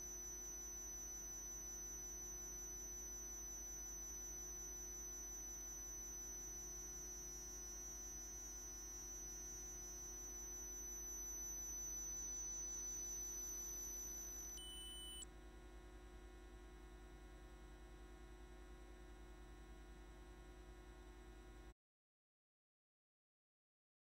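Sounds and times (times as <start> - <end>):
high-pitched electronic whine: 0.0 - 15.2.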